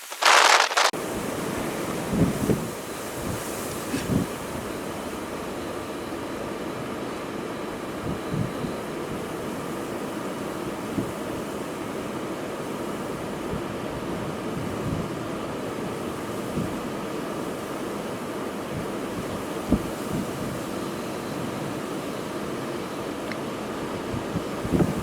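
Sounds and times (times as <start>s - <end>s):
wind rushing across microphone: 0.2s - 4.8s, 18.7s - 21.8s, 23.9s - 25.0s.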